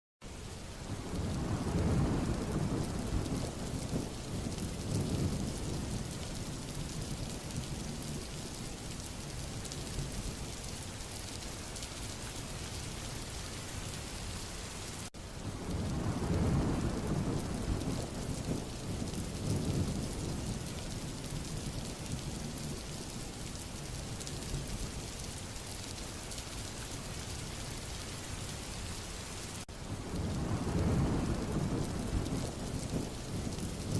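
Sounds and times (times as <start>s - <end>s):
heavy rain falling: 0.2s - 33.9s
thunder rumbling: 0.8s - 10.6s, 15.4s - 25.1s, 29.8s - 33.9s.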